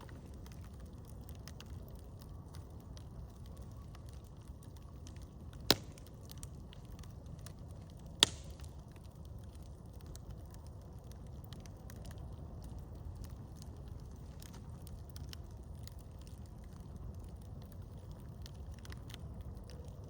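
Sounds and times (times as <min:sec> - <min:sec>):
campfire crackling: 0:00.0 - 0:20.0
sharp loud fire cracks: 0:05.0 - 0:10.2.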